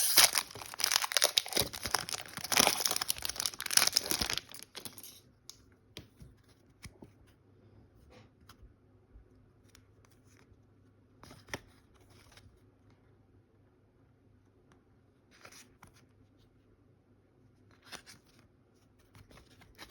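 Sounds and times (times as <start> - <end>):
cards rustling: 0.0 - 5.2
wrapper tearing and crinkling: 0.0 - 5.2.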